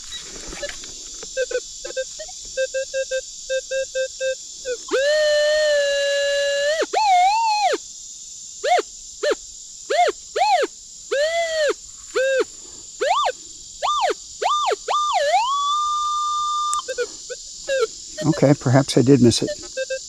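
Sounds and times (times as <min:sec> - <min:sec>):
metal detector tones: 0:13.0 - 0:17.1, 0:17.7 - 0:20.0.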